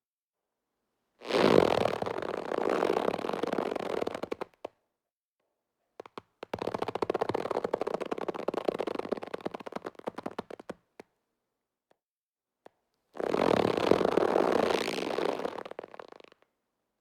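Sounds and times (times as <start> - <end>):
rubber band stretching creak: 13.2 - 16.4.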